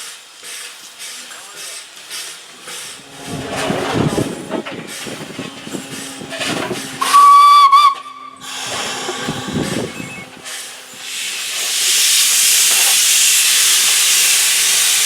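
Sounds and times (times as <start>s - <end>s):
steam locomotive hissing: 0.0s - 15.0s
steam whistle blast: 3.0s - 10.4s.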